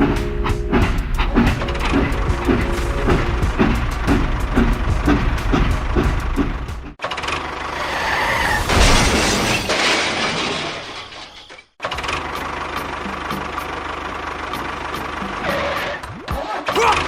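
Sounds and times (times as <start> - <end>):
engine running with regular tick: 0.1 - 7.0.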